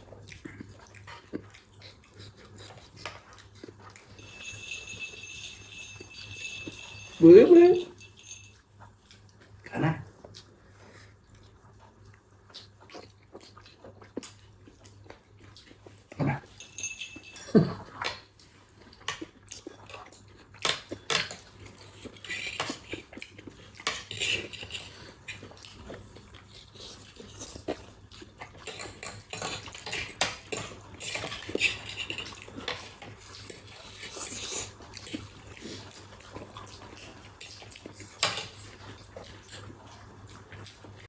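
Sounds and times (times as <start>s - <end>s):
chewing: 0.0s - 7.2s, 7.9s - 41.0s
cutlery clinking on plates: 19.0s - 25.9s, 27.0s - 35.3s, 36.7s - 39.2s.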